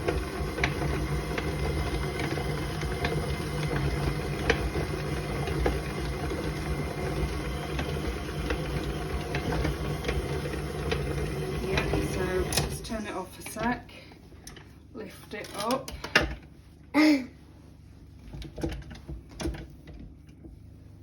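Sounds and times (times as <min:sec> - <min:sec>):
stand mixer running: 0:00.0 - 0:13.1.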